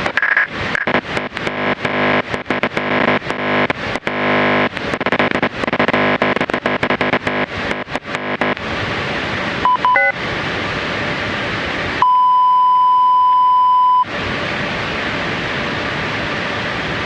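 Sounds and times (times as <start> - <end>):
static hiss: 0.0 - 12.0
short beeps and stepped tones: 9.6 - 10.2, 12.0 - 14.1
steady beep tone: 9.6 - 10.2, 12.0 - 14.1.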